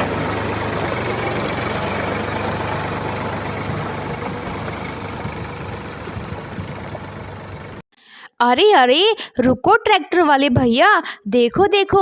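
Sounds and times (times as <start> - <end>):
tractor engine rumbling: 0.0 - 7.8.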